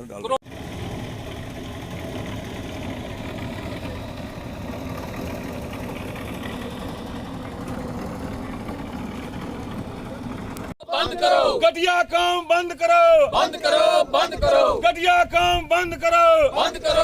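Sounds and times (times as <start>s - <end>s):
engine idling: 0.4s - 10.8s.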